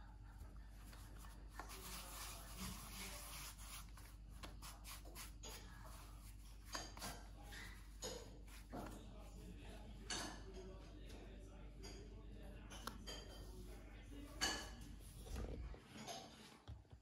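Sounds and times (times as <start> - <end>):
rubbing and scraping on surface: 0.8 - 9.3.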